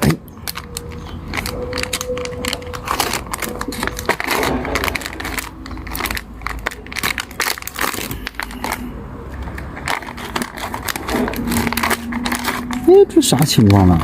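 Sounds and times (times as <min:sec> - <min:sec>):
plastic packet crinkling: 0:00.0 - 0:14.0
steady low rumble: 0:00.6 - 0:07.8.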